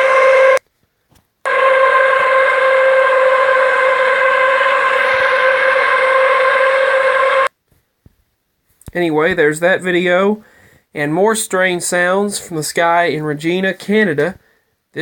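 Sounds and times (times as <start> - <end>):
steady horn-like drone: 0.0 - 0.6, 1.5 - 7.5.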